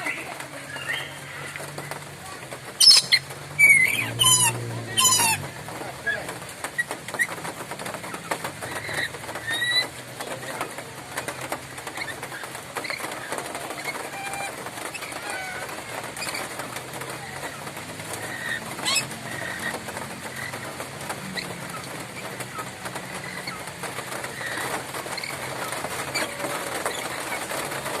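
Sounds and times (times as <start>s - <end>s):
lory calling and squawking: 0.0s - 1.6s, 2.7s - 5.5s, 17.4s - 27.8s.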